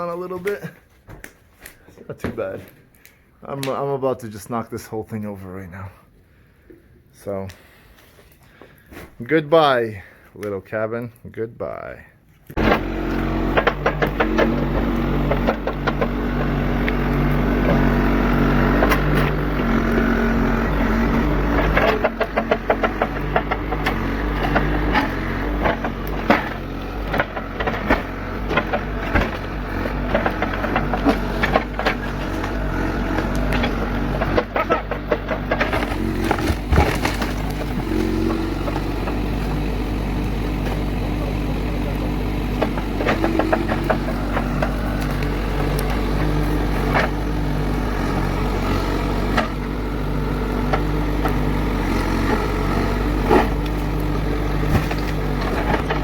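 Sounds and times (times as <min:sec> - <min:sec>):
timber cracking and crunching: 0:12.5 - 0:56.0
heavy machine engine running: 0:12.6 - 0:56.0.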